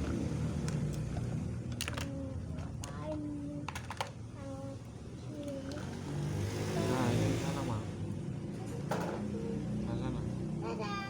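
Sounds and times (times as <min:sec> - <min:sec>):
plastic toy trucks clicking: 0:00.0 - 0:04.2.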